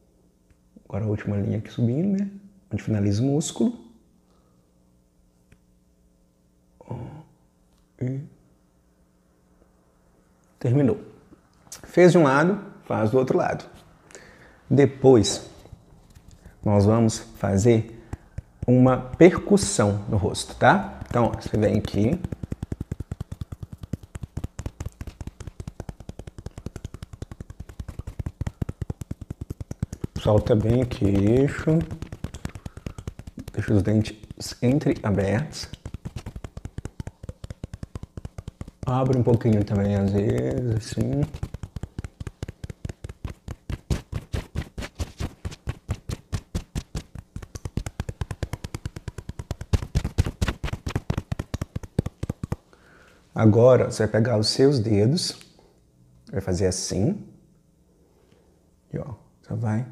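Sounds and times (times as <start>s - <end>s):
fingertips tapping on face: 16.1s - 52.8s.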